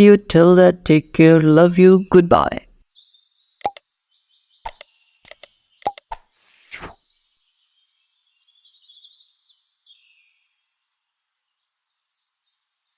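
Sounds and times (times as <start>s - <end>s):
songbird chirping and trilling: 1.9s - 6.0s, 7.0s - 11.0s
sharp clicks: 3.6s - 3.8s, 4.6s - 6.2s.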